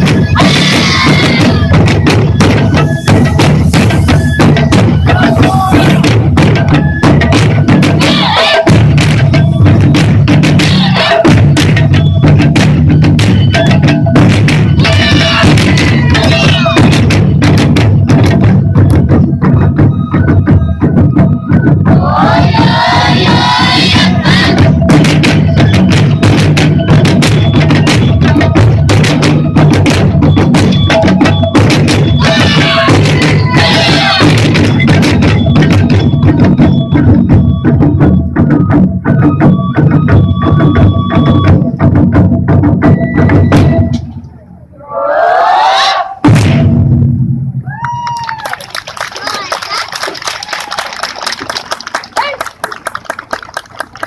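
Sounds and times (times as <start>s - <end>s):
taiko drum ensemble playing: 0.0s - 44.2s, 46.2s - 48.1s
group of voices calling out: 0.4s - 1.6s, 5.1s - 6.0s, 8.0s - 8.7s, 10.6s - 11.2s, 14.8s - 16.9s, 22.0s - 24.6s, 32.2s - 34.4s, 44.8s - 46.2s.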